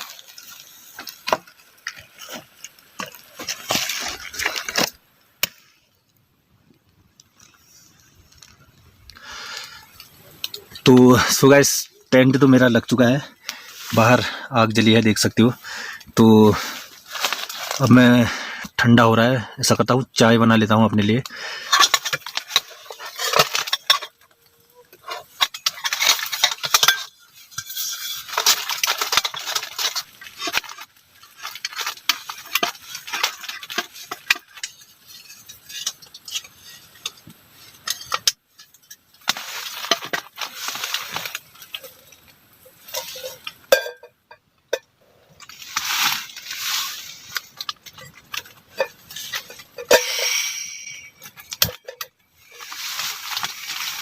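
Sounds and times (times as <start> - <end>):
metal cookware clinking and rattling: 21.5 - 54.0.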